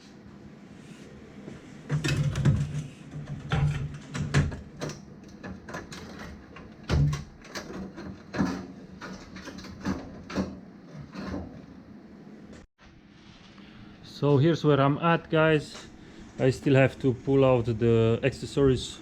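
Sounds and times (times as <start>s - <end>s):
knocks and clatters: 1.9s - 11.7s.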